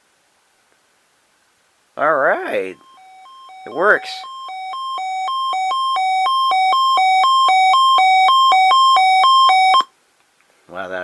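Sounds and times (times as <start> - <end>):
weather radio alarm beeps: 2.8 - 9.9.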